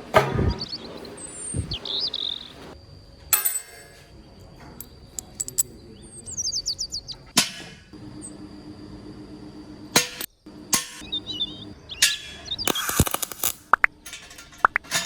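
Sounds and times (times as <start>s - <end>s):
bird chirping: 0.0s - 2.8s, 5.2s - 7.3s, 11.0s - 13.0s
faint steady hum: 0.0s - 15.0s.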